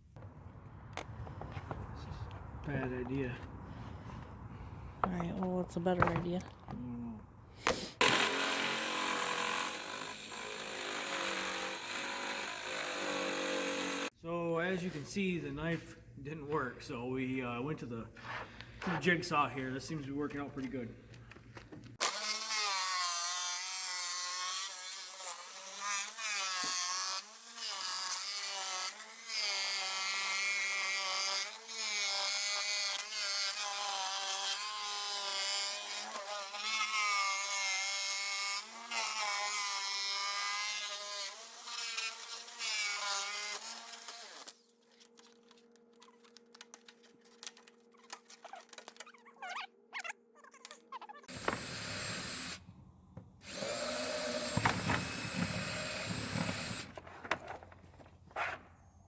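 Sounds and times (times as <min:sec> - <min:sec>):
jigsaw cutting plastic: 0:07.7 - 0:14.1, 0:22.0 - 0:52.7, 0:53.4 - 0:57.3.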